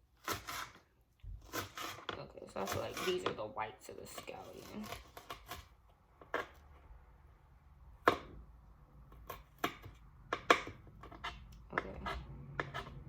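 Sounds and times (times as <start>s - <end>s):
knife chopping on cutting board: 8.0s - 8.4s, 9.1s - 13.0s.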